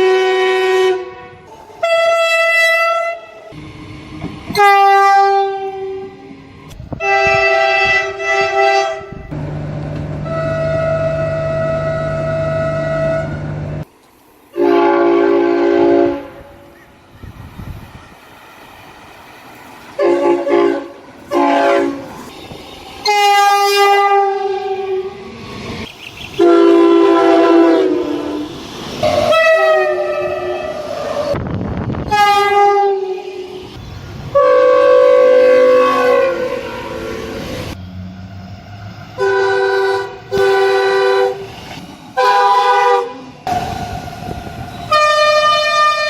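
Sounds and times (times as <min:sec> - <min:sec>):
train horn blasts: 0:00.0 - 0:03.6, 0:04.5 - 0:09.5, 0:10.2 - 0:13.6, 0:14.5 - 0:16.8, 0:20.0 - 0:25.3, 0:26.4 - 0:31.4, 0:32.0 - 0:37.4, 0:39.2 - 0:41.5, 0:42.2 - 0:43.6, 0:44.8 - 0:46.0
train rumbling quietly: 0:00.0 - 0:46.0.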